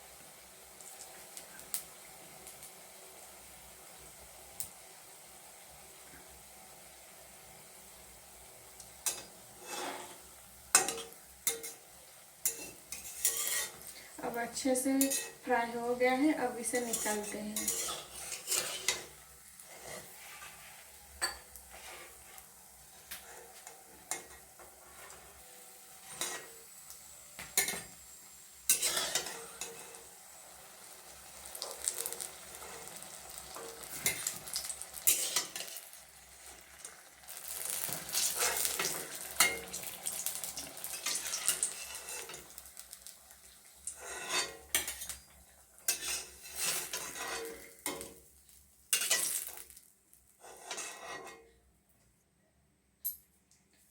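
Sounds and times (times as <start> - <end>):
oil sizzling: 0.0 - 51.5
metal spatula clinking on pan: 10.7 - 11.8, 12.4 - 13.8, 44.2 - 45.3, 49.0 - 49.4.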